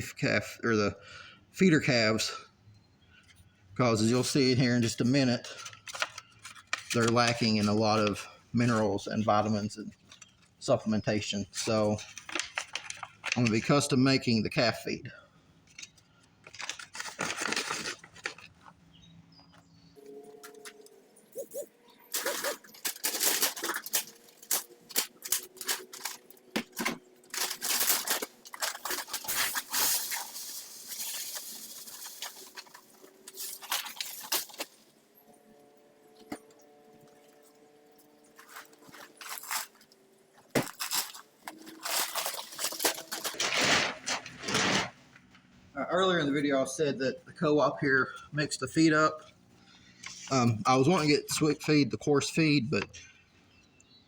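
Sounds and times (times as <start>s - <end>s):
granules rattling into bucket: 22.1s - 34.8s, 40.6s - 44.9s.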